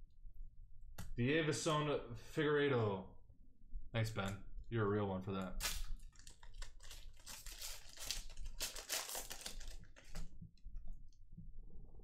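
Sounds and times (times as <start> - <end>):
cards and wrapper crinkling: 5.6 - 10.4.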